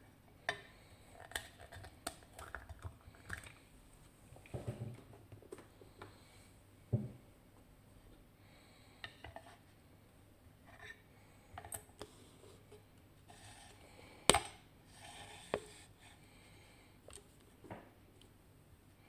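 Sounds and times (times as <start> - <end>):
knock: 6.9 - 7.2.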